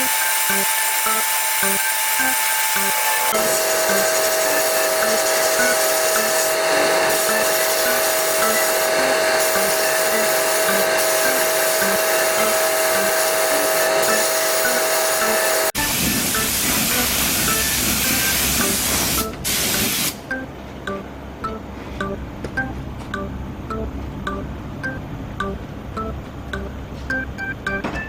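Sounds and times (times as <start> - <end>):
steady whistling tone: 0.0 - 19.4
compressed-air tool hissing: 0.0 - 20.2
light background music: 0.0 - 28.0.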